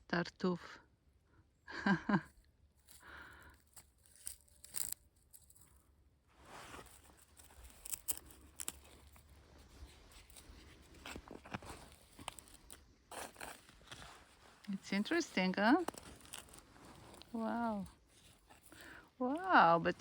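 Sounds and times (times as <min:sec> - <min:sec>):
digging in garden soil: 0:02.7 - 0:20.0
small crunches and clicks: 0:02.8 - 0:05.9, 0:06.6 - 0:20.0.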